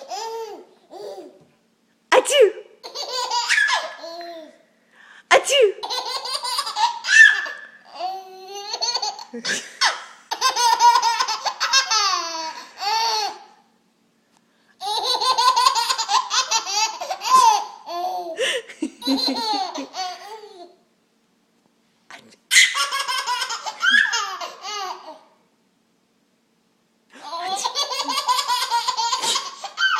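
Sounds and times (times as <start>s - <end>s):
baby giggling: 0.0s - 1.4s, 2.8s - 4.6s, 5.8s - 13.5s, 14.8s - 20.8s, 22.5s - 25.3s, 27.2s - 29.9s.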